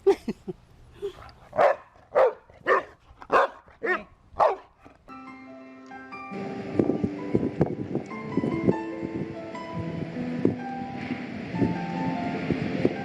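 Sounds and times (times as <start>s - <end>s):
dog barking: 1.6s - 4.7s
background music: 5.1s - 13.0s.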